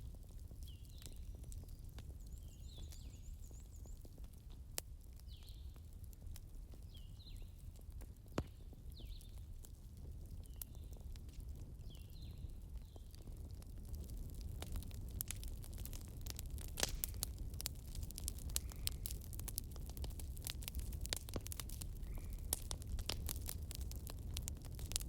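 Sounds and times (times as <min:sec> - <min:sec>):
fire popping: 0:00.0 - 0:25.0
wood fire crackling: 0:00.0 - 0:25.0.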